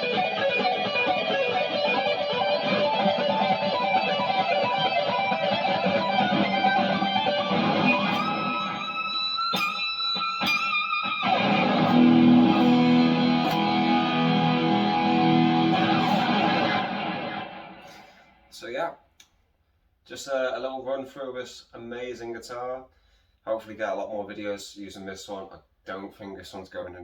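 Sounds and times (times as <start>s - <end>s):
electric guitar playing: 0.0s - 18.2s
sharp guitar clicks: 6.5s - 14.0s.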